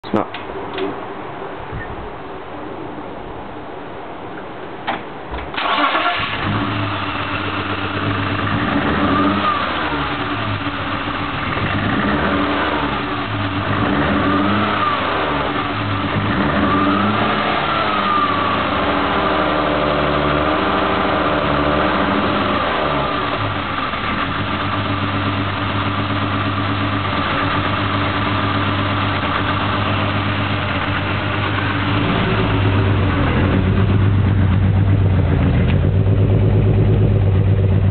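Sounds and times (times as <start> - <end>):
car engine starting and revving: 5.5 - 37.9.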